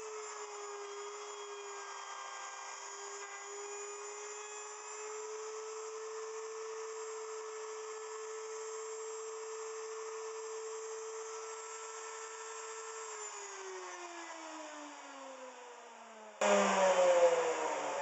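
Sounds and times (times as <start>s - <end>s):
router motor whining: 0.0s - 15.5s, 16.4s - 18.0s
loud whirring falling in pitch: 16.4s - 18.0s.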